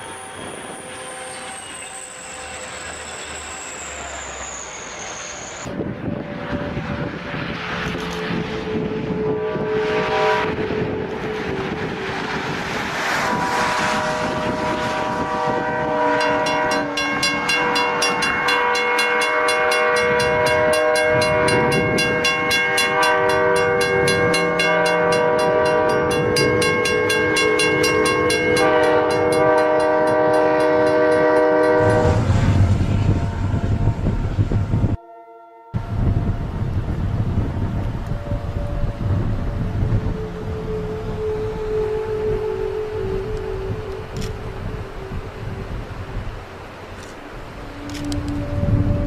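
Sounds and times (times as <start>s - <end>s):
passing train rumble: 0.0s - 49.0s
train horn chord: 5.7s - 49.0s.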